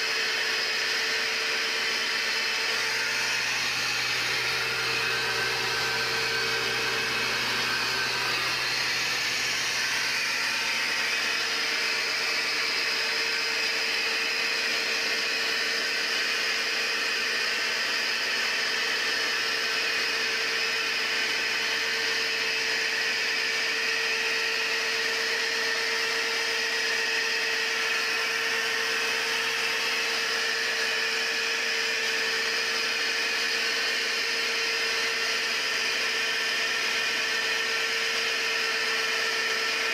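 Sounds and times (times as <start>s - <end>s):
machine whirring hum: 0.0s - 23.5s.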